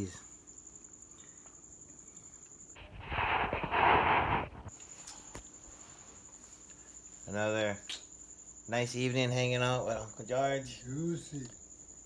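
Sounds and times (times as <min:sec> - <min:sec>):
crickets chirping: 0:00.0 - 0:12.0
rushing hiss of noise: 0:02.8 - 0:06.2.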